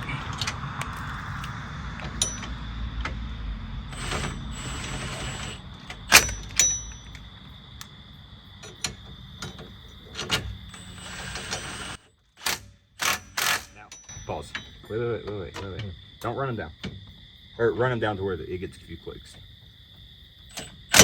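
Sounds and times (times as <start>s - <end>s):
steady low hum: 0.0s - 13.0s
metallic clicks of hand tools: 5.8s - 7.9s, 12.4s - 14.8s.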